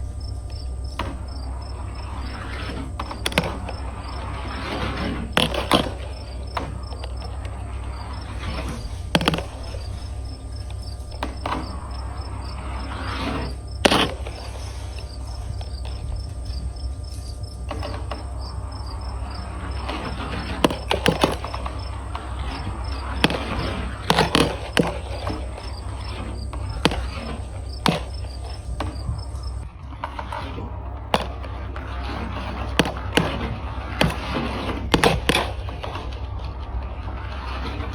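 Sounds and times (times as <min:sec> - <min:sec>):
insects chirping: 0:00.0 - 0:29.6.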